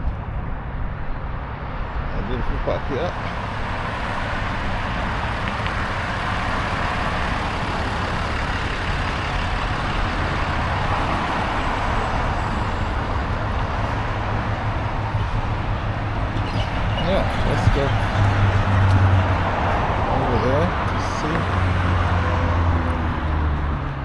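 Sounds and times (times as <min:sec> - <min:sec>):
road noise: 0:00.0 - 0:24.0
engine humming: 0:01.4 - 0:24.0.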